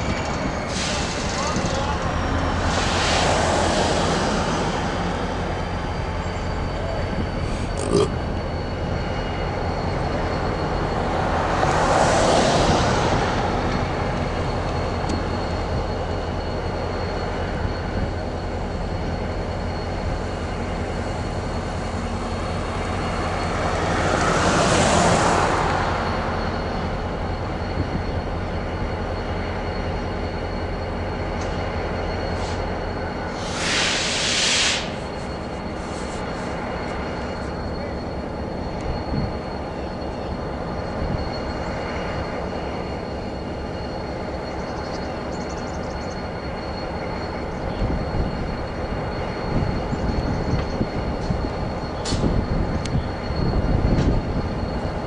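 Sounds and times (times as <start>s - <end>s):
diesel locomotive droning: 0.0s - 55.0s
loud hiss: 33.3s - 36.4s.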